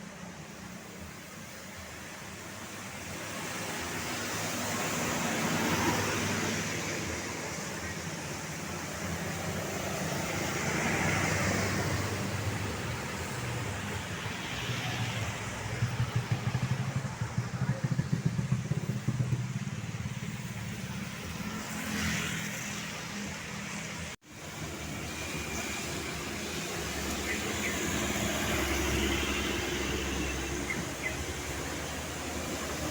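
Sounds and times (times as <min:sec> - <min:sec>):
vehicles passing: 0:00.0 - 0:32.9
rapid engine pulsing: 0:14.4 - 0:21.4.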